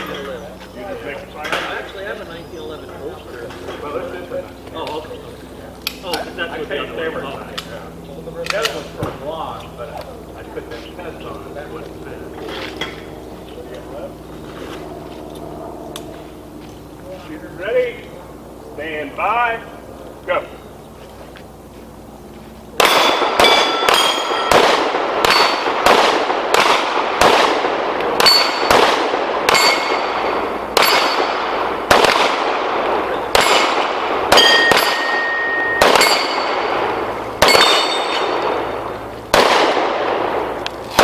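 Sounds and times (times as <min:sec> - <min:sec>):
steel plates ringing: 0:22.8 - 0:24.6, 0:25.2 - 0:25.8, 0:28.2 - 0:28.7, 0:29.5 - 0:31.6, 0:34.4 - 0:38.8
pistol shots: 0:22.8 - 0:41.0.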